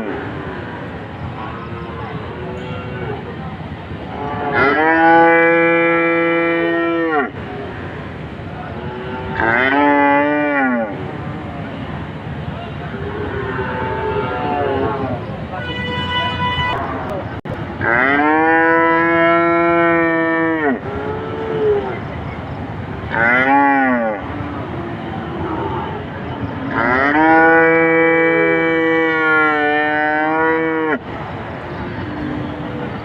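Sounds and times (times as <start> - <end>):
cow mooing: 4.1 - 7.3, 8.9 - 10.9, 26.7 - 31.0.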